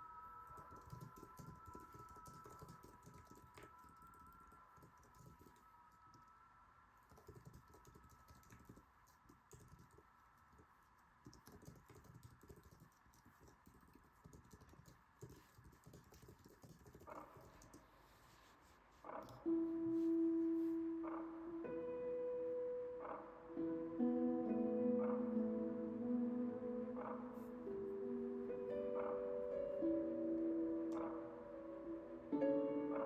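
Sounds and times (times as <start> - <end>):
keyboard typing: 0.4 - 6.3, 7.1 - 17.9.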